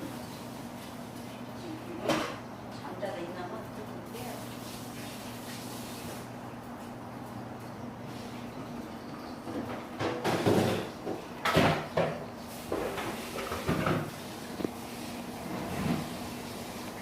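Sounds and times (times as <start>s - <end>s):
household knocks and rattles: 9.5s - 12.2s.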